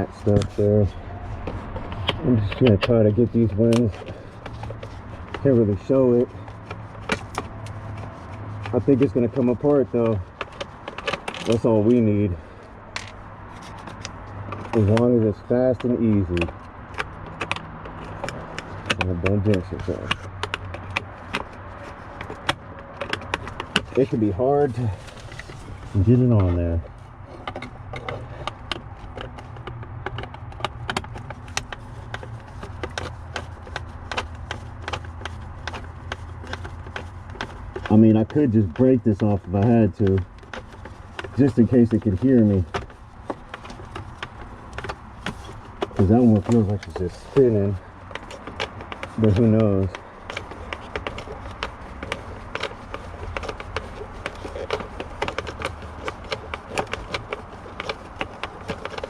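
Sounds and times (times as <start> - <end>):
hand tool clicking on screws: 27.4 - 59.0.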